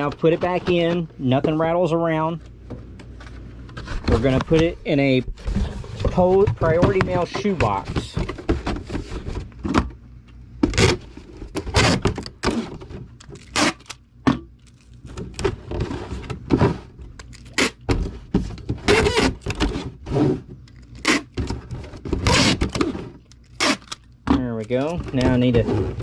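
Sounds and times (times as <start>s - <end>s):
cardboard scraping and rustling: 0.0s - 1.8s, 3.1s - 9.8s, 10.7s - 13.9s, 14.7s - 26.0s
cardboard boxes thunking: 3.9s - 9.9s.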